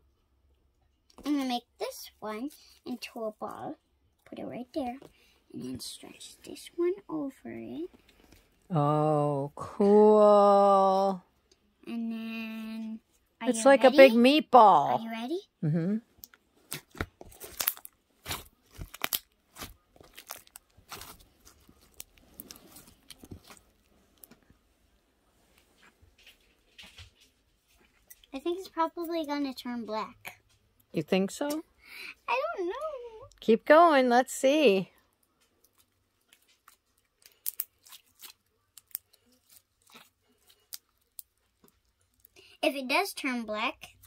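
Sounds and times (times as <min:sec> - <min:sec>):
slime popping and crackling: 0:16.2 - 0:24.3, 0:35.6 - 0:42.4.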